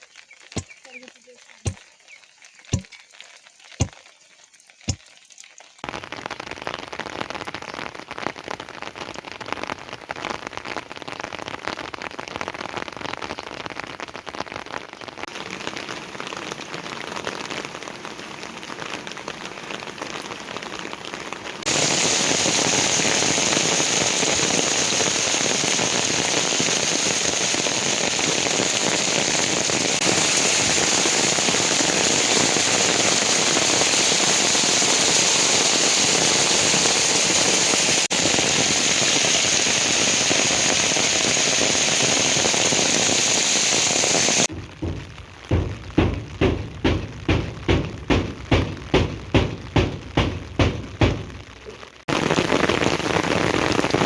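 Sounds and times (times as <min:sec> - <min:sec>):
sharp knocks: 0:02.7 - 0:02.9, 0:44.5 - 0:51.5
heavy rain falling: 0:05.8 - 0:54.0.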